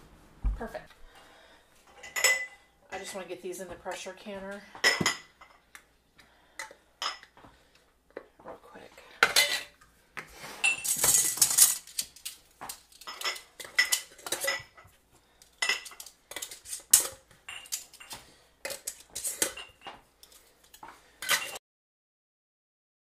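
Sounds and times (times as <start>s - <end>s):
glass jars clinking: 1.9s - 3.2s, 10.6s - 12.1s, 13.0s - 14.9s, 15.6s - 20.0s, 21.2s - 21.6s.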